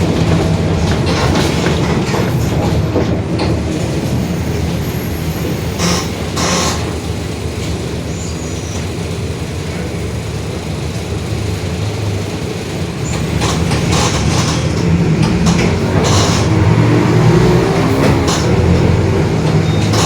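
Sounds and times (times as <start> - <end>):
rattling clatters: 0.0 - 7.8, 12.8 - 20.0
bus engine low drone: 0.0 - 20.0.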